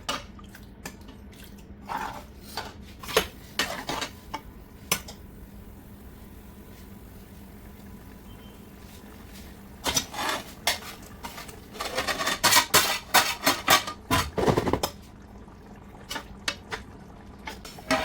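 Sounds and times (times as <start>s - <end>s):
metal utensils clinking on pots: 9.8s - 15.0s.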